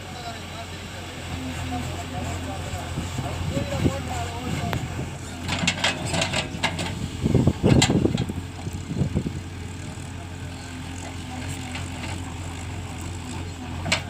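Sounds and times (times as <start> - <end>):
diesel engine running: 0.0 - 14.0
knocks and clatter: 5.4 - 7.0.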